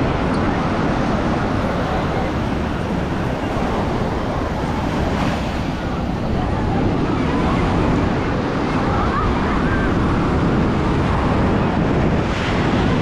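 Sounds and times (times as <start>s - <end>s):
road traffic: 0.0s - 9.6s
surf: 0.0s - 13.0s
wind: 0.0s - 13.0s.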